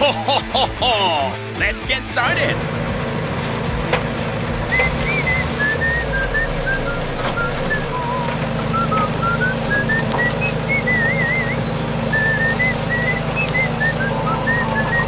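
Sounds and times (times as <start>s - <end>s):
person whistling a tune: 4.8s - 15.0s.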